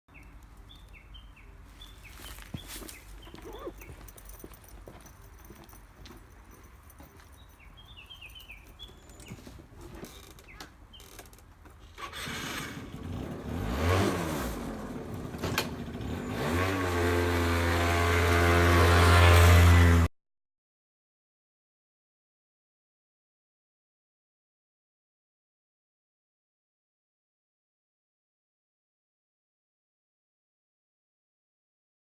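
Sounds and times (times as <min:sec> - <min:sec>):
engine revving: 0:12.0 - 0:20.1.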